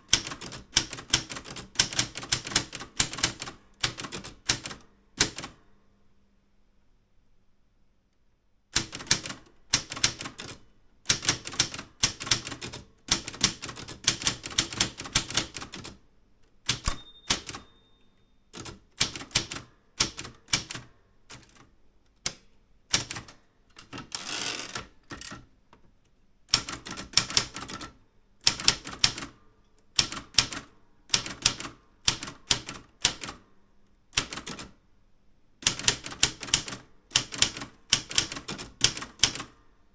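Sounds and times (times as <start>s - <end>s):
typewriter keystrokes: 0.1s - 5.6s, 8.8s - 16.0s, 16.7s - 17.9s, 18.6s - 25.4s, 26.5s - 29.4s, 30.0s - 33.4s, 34.2s - 34.7s, 35.6s - 39.6s
short ringing tone: 16.9s - 18.2s.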